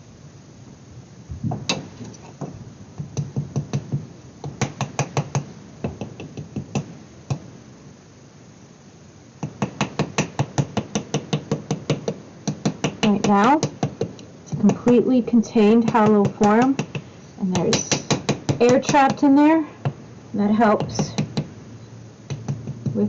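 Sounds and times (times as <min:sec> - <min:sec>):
paddle tapping hollow clay: 0:01.5 - 0:07.4, 0:09.4 - 0:15.0, 0:15.8 - 0:19.2.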